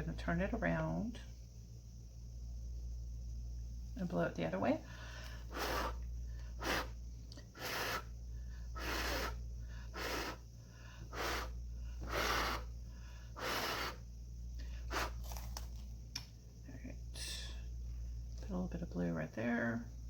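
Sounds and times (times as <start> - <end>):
low electrical hum: 0.0 - 20.0
short puffs of air: 4.9 - 12.7, 13.4 - 14.1.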